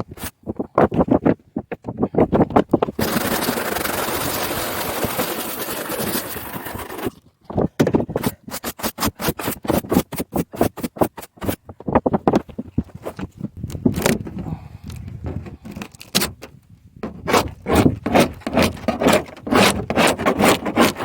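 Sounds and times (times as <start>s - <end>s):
rapid scraping strokes: 3.0s - 7.2s, 8.1s - 11.6s, 17.1s - 21.0s.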